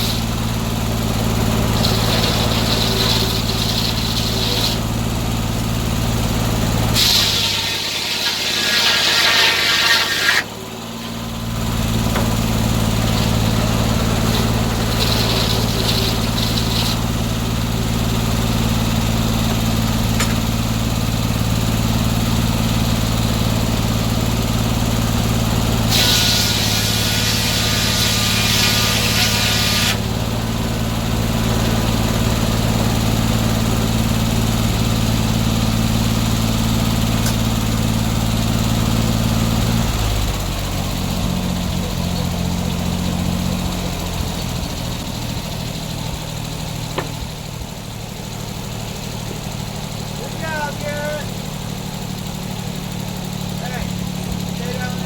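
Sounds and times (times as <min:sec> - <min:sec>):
circular saw blade cutting wood: 0:00.0 - 0:20.8, 0:24.9 - 0:38.2
gas engine running: 0:00.0 - 0:55.0.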